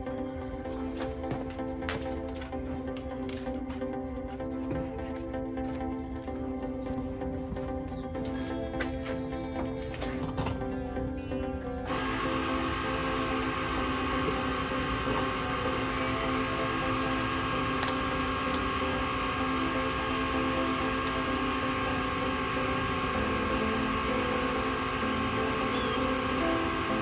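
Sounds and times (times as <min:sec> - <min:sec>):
mechanical hum: 0:11.9 - 0:27.0
sharp clicks: 0:11.9 - 0:27.0.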